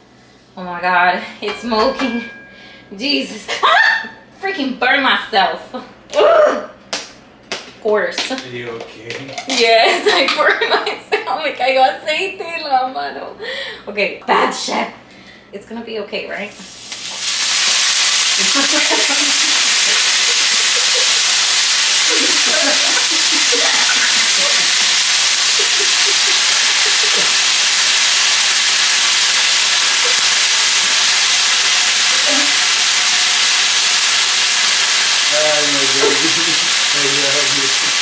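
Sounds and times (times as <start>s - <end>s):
chicken sizzling in a hot pan: 16.5s - 38.0s.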